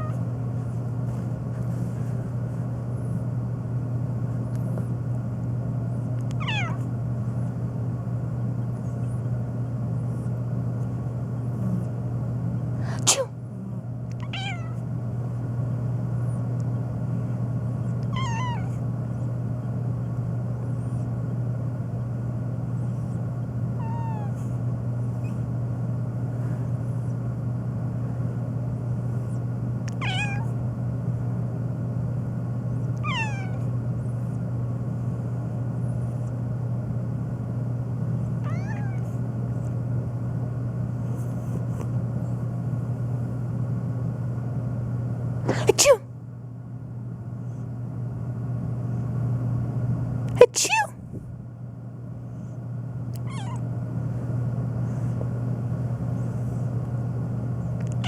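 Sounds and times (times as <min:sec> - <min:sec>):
steady low hum: 0:00.0 - 0:58.0
cat meowing: 0:06.4 - 0:06.9, 0:14.2 - 0:14.8, 0:18.0 - 0:18.8, 0:23.8 - 0:24.4, 0:29.9 - 0:30.5, 0:33.0 - 0:33.7, 0:38.4 - 0:39.1, 0:53.2 - 0:53.7.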